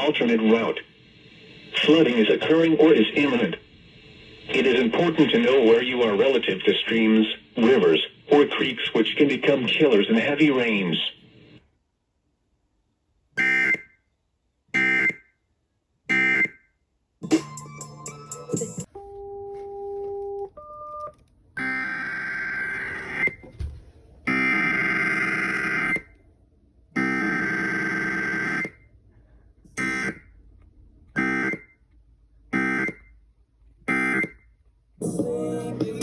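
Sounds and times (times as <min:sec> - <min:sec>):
music: 0:17.2 - 0:18.9, 0:35.0 - 0:36.0.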